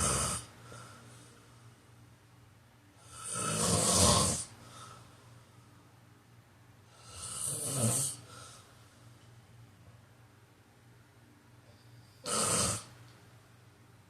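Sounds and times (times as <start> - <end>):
man snoring: 0.0 - 0.5, 3.0 - 4.5, 7.0 - 8.5, 12.2 - 12.9.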